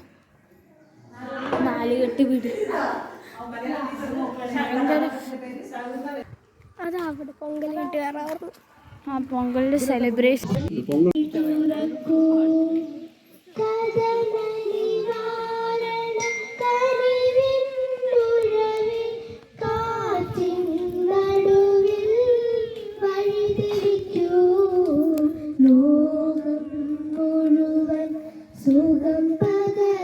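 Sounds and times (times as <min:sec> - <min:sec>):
child singing slow song: 0:11.2 - 0:30.0.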